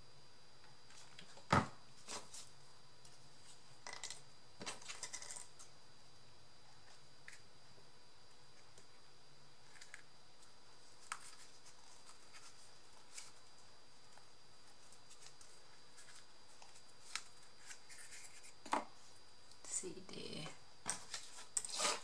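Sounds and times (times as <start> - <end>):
steady background hiss: 0.0 - 22.0
paper and chipboard rustling: 10.8 - 18.8.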